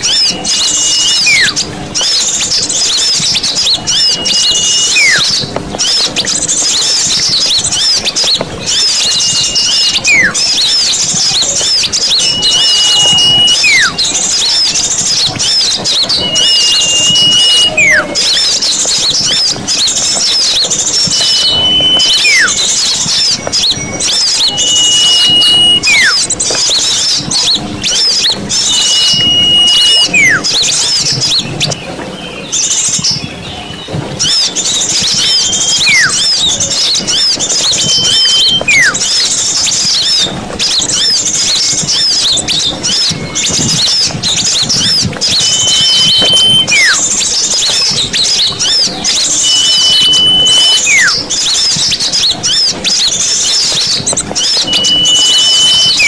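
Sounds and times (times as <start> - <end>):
whistle with falling note: 0.0 - 1.6, 3.9 - 6.0, 8.7 - 10.8, 11.6 - 14.8, 15.4 - 18.6, 20.5 - 31.4, 35.0 - 39.1, 44.8 - 47.0, 48.6 - 51.2, 53.7 - 56.0
small birds chattering: 0.0 - 56.0.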